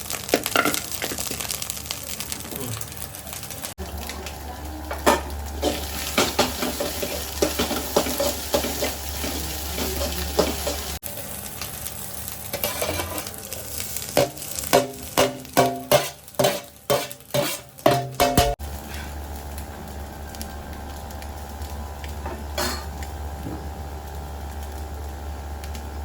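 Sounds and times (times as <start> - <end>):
food sizzling in a pan: 0.0 - 26.0
spatula scraping a pan: 12.6 - 13.3, 15.6 - 19.1.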